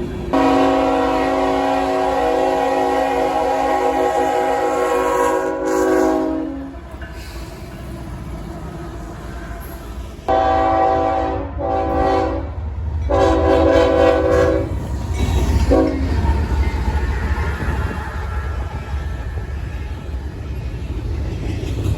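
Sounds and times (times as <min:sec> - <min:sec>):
locomotive engine and rail rumble: 0:00.0 - 0:21.9
locomotive air horn blasts: 0:00.3 - 0:06.8, 0:10.3 - 0:14.8, 0:15.7 - 0:16.1.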